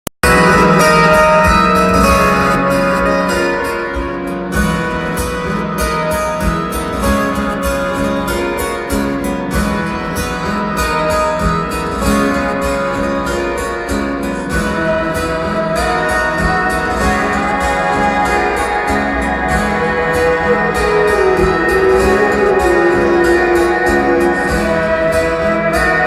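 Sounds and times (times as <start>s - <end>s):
live guitar-led music: 0.2s - 26.0s.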